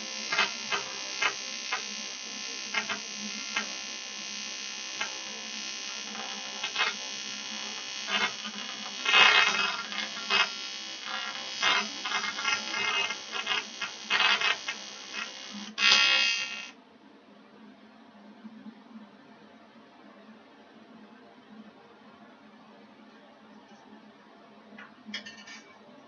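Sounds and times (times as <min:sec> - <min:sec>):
welding arc buzzing and crackling: 0:00.0 - 0:16.8.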